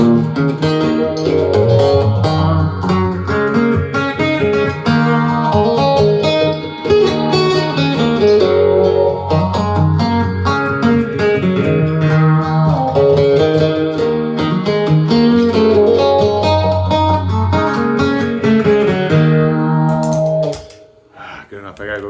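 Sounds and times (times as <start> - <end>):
guitar plucked notes: 0.0 - 21.0.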